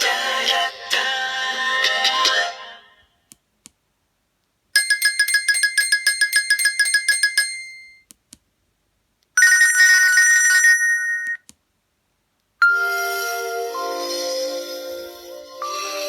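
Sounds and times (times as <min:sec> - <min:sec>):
electronic ringtone trill: 0:12.6 - 0:14.5.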